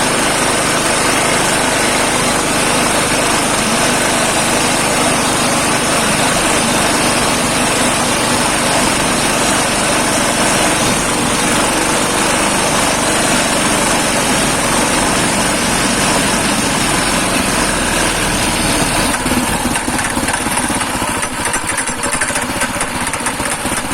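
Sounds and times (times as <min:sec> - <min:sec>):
motorcycle engine running: 0:00.0 - 0:23.9.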